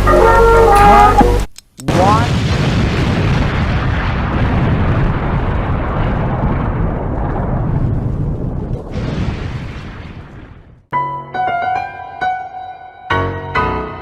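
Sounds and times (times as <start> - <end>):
long rumbling explosion: 1.9 - 10.9.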